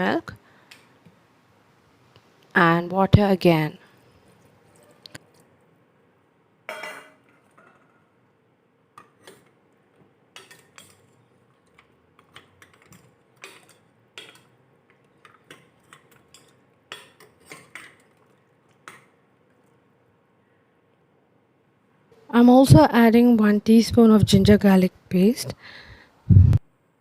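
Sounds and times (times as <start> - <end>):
metal utensil clinking on pot: 6.7 - 8.0, 10.3 - 19.1.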